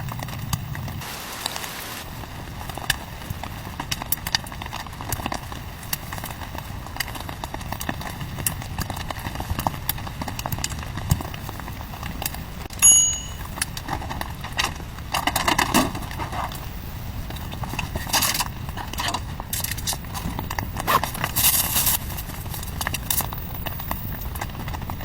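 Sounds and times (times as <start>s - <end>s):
brief ringing ding: 12.8s - 13.5s.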